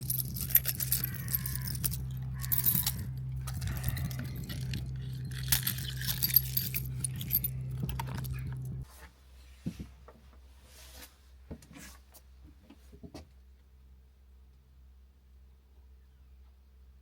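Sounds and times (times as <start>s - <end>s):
metallic jingling and clinking: 0.0s - 8.9s
steady low hum: 0.0s - 8.9s.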